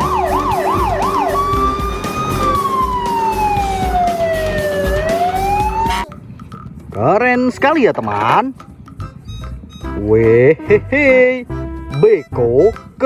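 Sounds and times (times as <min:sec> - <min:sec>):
fire truck siren: 0:00.0 - 0:06.1.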